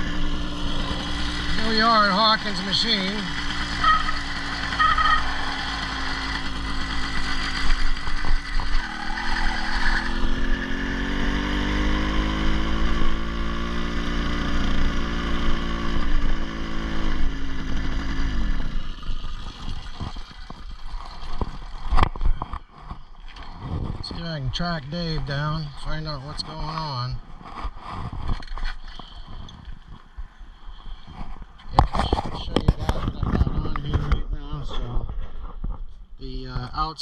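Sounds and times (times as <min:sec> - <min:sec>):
motorized bicycle engine running: 0:00.0 - 0:23.7.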